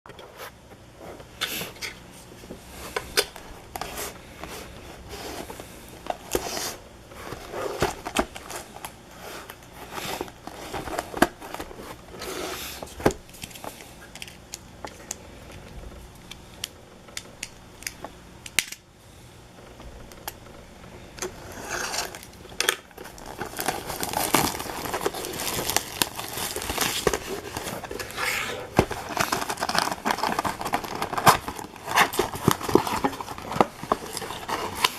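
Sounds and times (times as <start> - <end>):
foil wrappers crinkling and tearing: 21.2 - 34.9.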